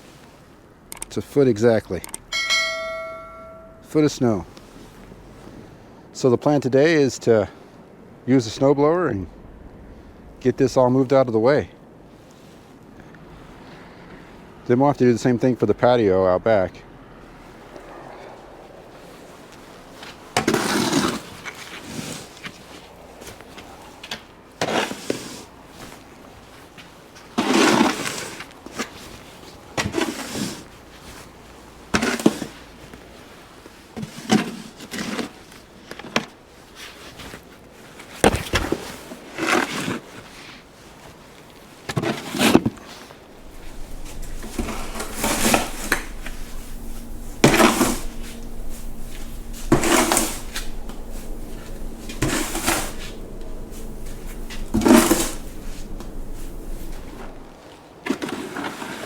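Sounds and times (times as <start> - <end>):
faint steady hum: 0.0 - 6.2, 43.2 - 57.6
snow shovel scraping snow: 20.4 - 22.2, 43.4 - 57.4.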